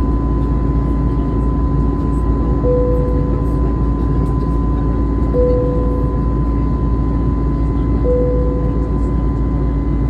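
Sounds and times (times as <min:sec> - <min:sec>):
airplane cabin engine rumble: 0:00.0 - 0:10.0
constant whine: 0:00.0 - 0:10.0
short humming tone: 0:02.6 - 0:03.6, 0:05.3 - 0:06.6, 0:08.0 - 0:09.2.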